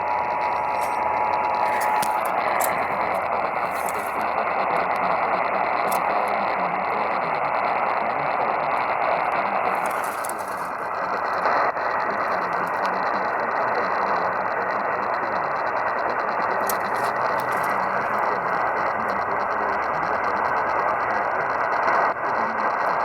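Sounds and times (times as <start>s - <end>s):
faint broadcast voice: 0.0s - 23.0s
radio static hiss: 0.0s - 23.0s
clicks: 0.5s - 5.0s, 9.7s - 13.2s, 16.5s - 18.6s.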